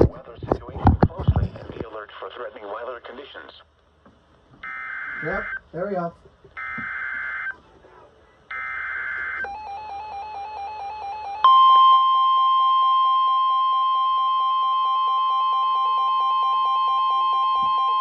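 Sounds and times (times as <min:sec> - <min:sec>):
buzzing data tones: 0:04.6 - 0:05.6
steady warning alarm tone: 0:04.6 - 0:05.6, 0:06.6 - 0:07.6, 0:08.5 - 0:18.0
pulsing electronic alarm beep: 0:08.5 - 0:18.0.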